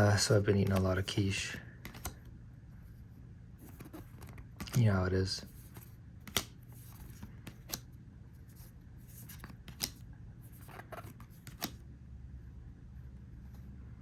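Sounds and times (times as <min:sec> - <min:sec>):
trading cards snapping: 0:01.8 - 0:02.2, 0:03.7 - 0:04.9, 0:05.7 - 0:07.9, 0:09.2 - 0:10.0, 0:10.6 - 0:11.8.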